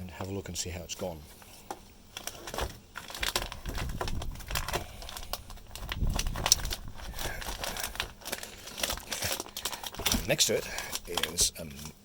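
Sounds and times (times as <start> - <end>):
plastic wrapping crinkling: 0.2 - 12.0.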